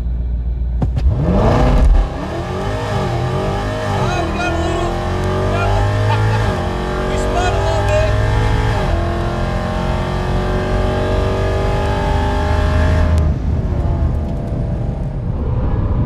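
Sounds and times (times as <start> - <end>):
car engine at full throttle: 0.0 - 16.0.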